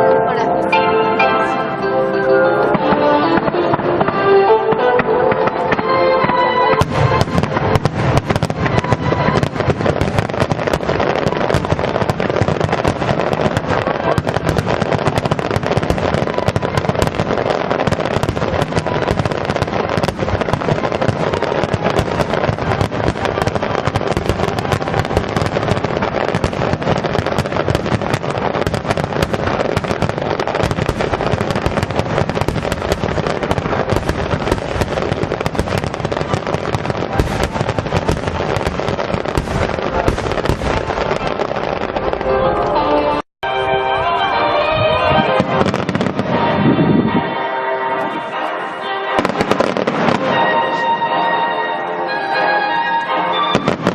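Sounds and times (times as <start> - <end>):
music: 0.0 - 53.9
fireworks bangs and crackling: 0.3 - 43.2, 44.3 - 53.9.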